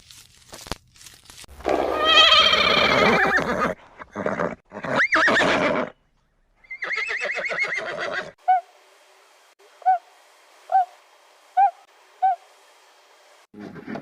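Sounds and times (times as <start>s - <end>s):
animal wavering cries: 1.7s - 5.8s, 9.8s - 10.0s.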